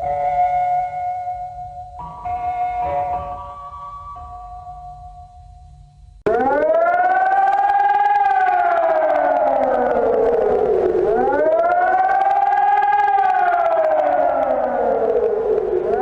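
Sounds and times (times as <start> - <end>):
emergency siren wailing: 0.0 - 1.7, 6.2 - 16.0.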